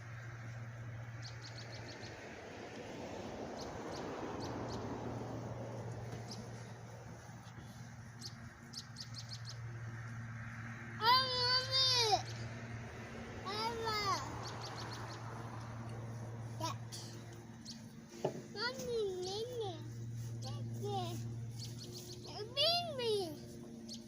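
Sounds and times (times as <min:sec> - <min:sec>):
small birds chirping: 0:00.0 - 0:24.0
steady low hum: 0:00.0 - 0:24.0
high voice calling out: 0:11.0 - 0:12.2.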